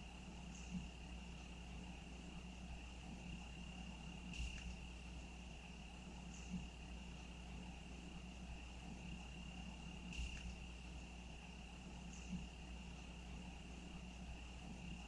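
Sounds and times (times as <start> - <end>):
cricket chirping: 0.0 - 15.0.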